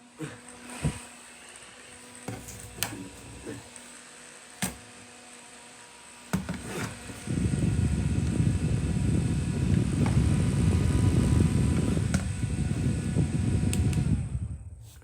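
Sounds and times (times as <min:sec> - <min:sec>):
fan humming: 0:00.0 - 0:15.0
wind rumble on microphone: 0:07.2 - 0:15.0.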